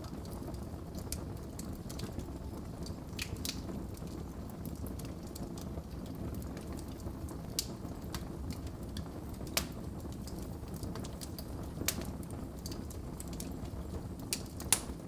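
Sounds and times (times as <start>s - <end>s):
wood fire crackling: 0.0s - 15.0s
fire pops: 2.8s - 4.1s, 4.7s - 15.0s.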